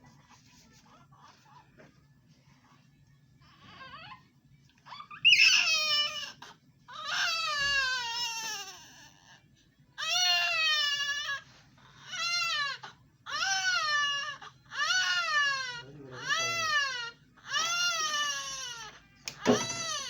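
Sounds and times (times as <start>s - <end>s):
baby crying: 4.9s - 9.4s, 12.0s - 20.0s.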